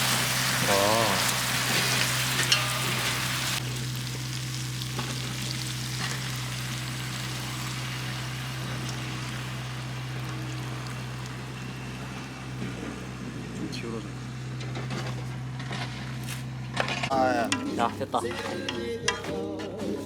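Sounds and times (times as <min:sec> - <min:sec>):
food sizzling in a pan: 0:00.0 - 0:12.6.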